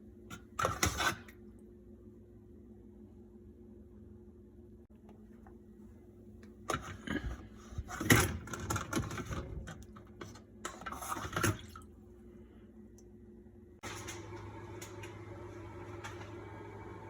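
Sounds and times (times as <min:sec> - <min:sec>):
faint steady hum: 0:00.0 - 0:17.0
objects clattering and knocking: 0:06.7 - 0:11.8.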